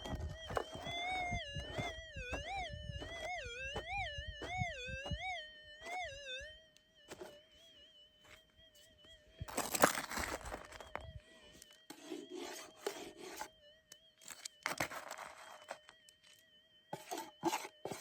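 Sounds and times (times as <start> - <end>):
metal detector tone warbling: 0.0 - 18.0.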